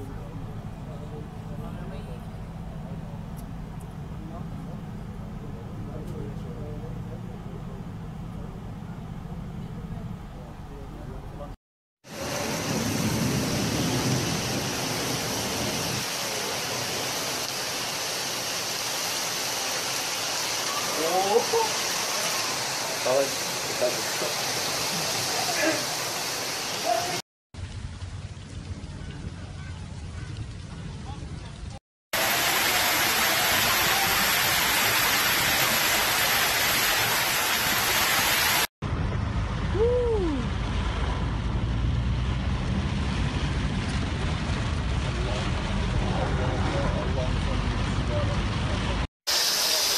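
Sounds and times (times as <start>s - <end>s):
low rumbling rush: 0.0s - 18.0s, 27.6s - 49.1s
heavy rain pouring: 12.0s - 30.6s, 32.2s - 38.7s, 42.8s - 49.9s.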